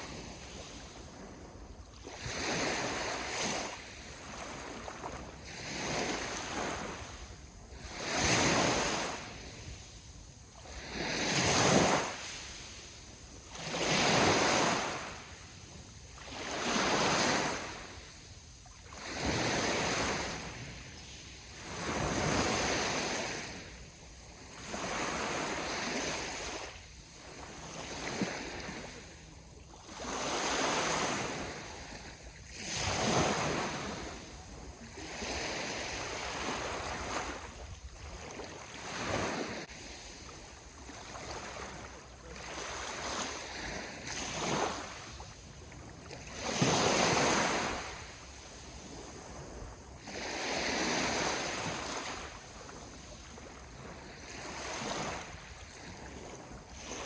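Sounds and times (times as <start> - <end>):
sea waves breaking on shore: 0.0 - 57.0.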